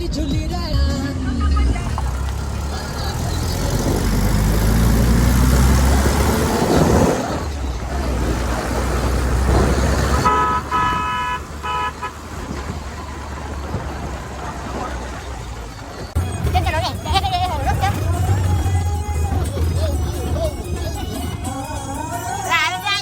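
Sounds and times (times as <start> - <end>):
car engine running: 0.0 - 23.0
wind and road noise: 0.0 - 23.0
car horn honking: 10.0 - 13.8, 16.2 - 19.2.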